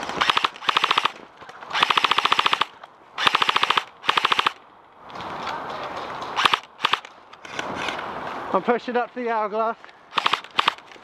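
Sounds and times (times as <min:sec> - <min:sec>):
airsoft gun firing bursts: 0:00.0 - 0:04.6, 0:06.4 - 0:07.1, 0:10.1 - 0:10.9.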